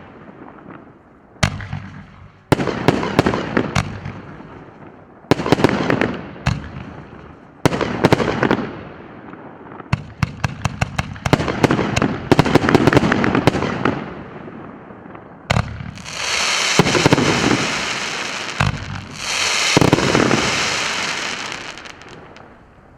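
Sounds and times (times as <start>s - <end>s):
firework launch and burst reports: 15.9s - 22.5s
firework crackling hiss: 15.9s - 22.9s.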